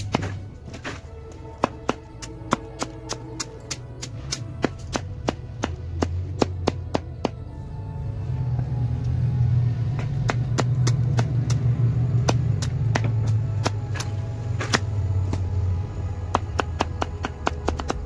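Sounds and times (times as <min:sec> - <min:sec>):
low engine drone: 0:00.0 - 0:18.0.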